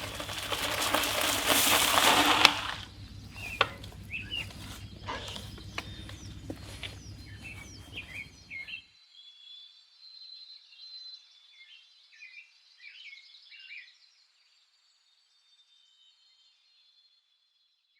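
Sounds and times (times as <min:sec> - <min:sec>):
clattering rumbling noise: 0:00.0 - 0:08.5
birds chirping: 0:00.0 - 0:08.8.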